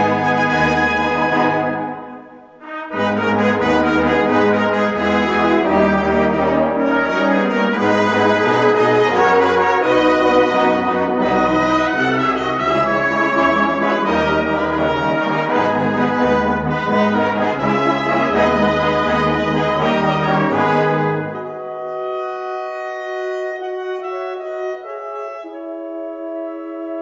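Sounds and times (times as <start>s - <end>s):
brass band playing hymn: 0.0s - 27.0s.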